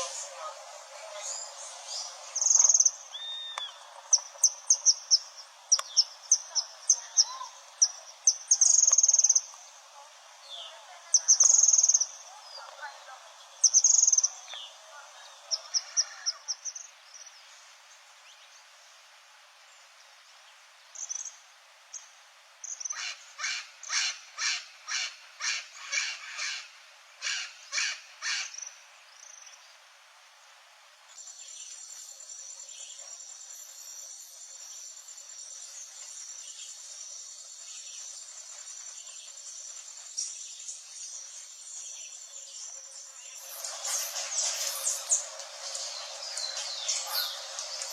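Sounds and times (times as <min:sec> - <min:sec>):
birds chirping: 0:00.0 - 0:17.6, 0:31.1 - 0:47.9.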